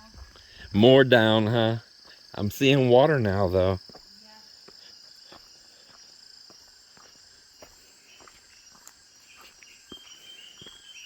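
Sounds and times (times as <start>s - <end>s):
high insect chorus: 0.0s - 11.0s
footsteps on trail: 3.3s - 11.0s
high whistled call: 9.7s - 11.0s.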